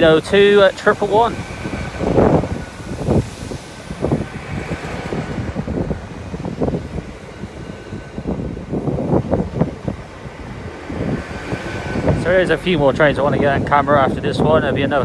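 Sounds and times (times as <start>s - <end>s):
faint steady whine: 0.0s - 9.8s
train rumbling: 0.0s - 15.0s.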